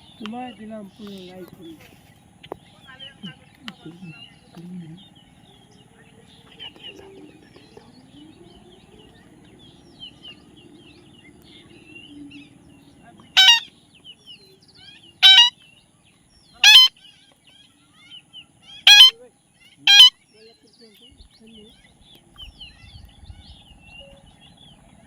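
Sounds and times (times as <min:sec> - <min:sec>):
parrot chirping and twittering: 0:05.2 - 0:15.7, 0:16.4 - 0:20.2
parrot squawking harshly: 0:13.4 - 0:13.7, 0:15.2 - 0:15.6, 0:16.6 - 0:17.0, 0:18.7 - 0:19.2, 0:19.9 - 0:20.2.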